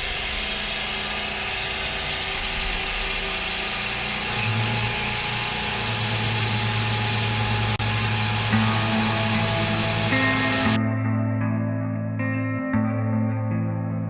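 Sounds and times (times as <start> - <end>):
milling machine hiss and whine: 0.0 - 10.8.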